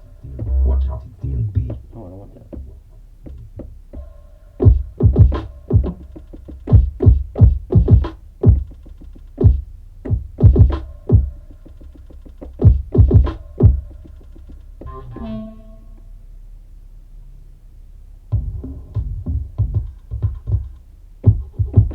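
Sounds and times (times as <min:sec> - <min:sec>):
low bass: 0:00.0 - 0:06.2, 0:12.6 - 0:21.9
drum machine hits: 0:00.0 - 0:15.6, 0:18.3 - 0:21.9
held synth tone: 0:14.9 - 0:16.3.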